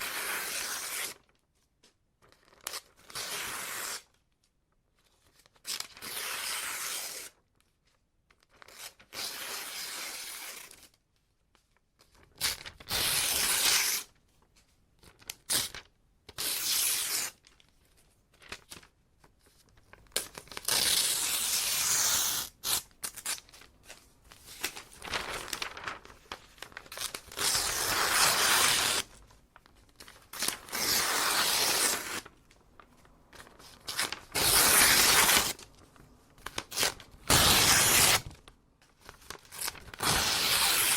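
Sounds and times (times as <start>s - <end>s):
paper ripping: 24.4s - 29.2s, 30.0s - 32.3s, 33.4s - 35.6s, 36.4s - 38.4s, 39.1s - 40.9s.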